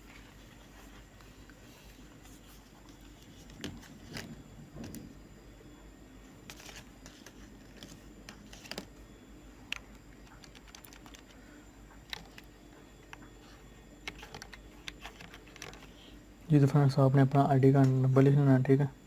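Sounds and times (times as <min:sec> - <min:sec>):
faint keyboard keystrokes: 0:09.7 - 0:11.4, 0:14.0 - 0:16.1
sharp keyboard click: 0:10.3 - 0:11.3.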